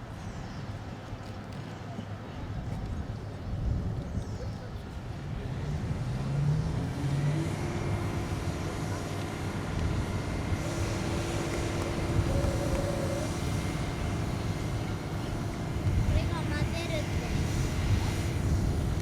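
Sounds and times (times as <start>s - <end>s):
helicopter engine and rotor rumble: 6.9s - 19.0s
faint high whine: 10.6s - 15.4s.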